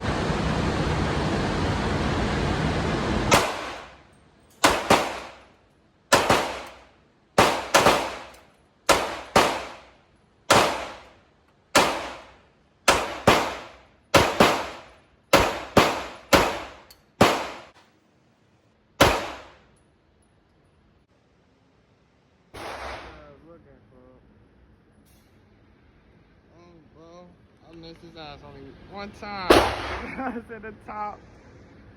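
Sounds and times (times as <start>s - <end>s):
loud steady rushing noise: 0.0s - 5.5s
pistol shots: 3.3s - 4.0s, 4.6s - 5.5s, 6.1s - 6.8s, 7.4s - 9.9s, 10.5s - 11.1s, 11.7s - 17.8s, 19.0s - 19.6s, 22.6s - 23.2s, 29.5s - 30.2s.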